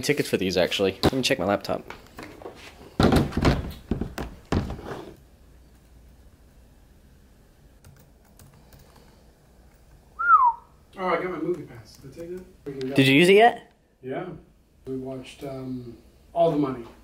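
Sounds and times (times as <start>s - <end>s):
laptop handling thumps: 3.0s - 5.2s.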